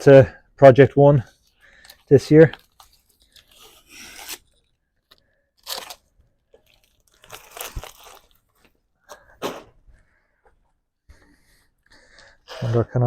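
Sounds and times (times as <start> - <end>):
packing material crunching: 1.5 - 8.7.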